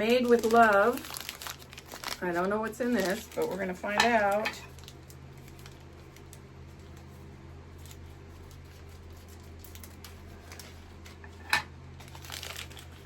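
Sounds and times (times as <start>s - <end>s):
plastic packet rustling: 0.0s - 13.0s
steady low hum: 0.0s - 13.0s.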